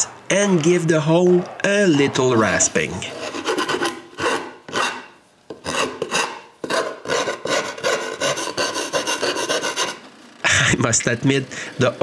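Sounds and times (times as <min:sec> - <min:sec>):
wood rasp filing: 0:03.0 - 0:10.1.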